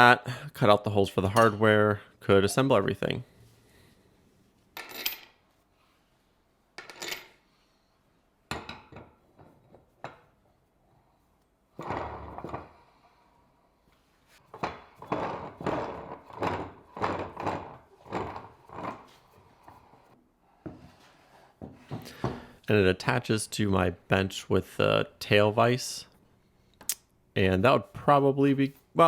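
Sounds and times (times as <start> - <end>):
wood scraping: 14.4 - 22.0.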